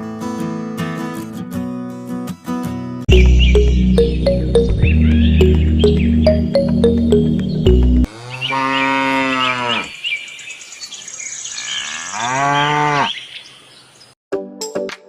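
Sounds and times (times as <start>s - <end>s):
cow mooing: 8.1s - 10.0s, 11.6s - 13.2s.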